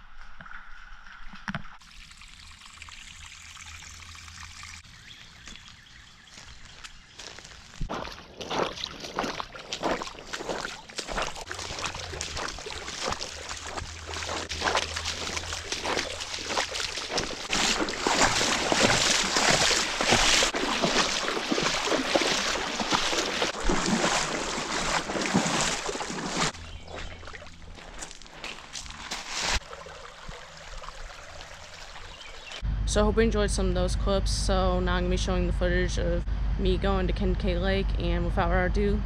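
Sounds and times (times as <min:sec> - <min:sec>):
water splashing and sloshing: 0:00.0 - 0:32.6.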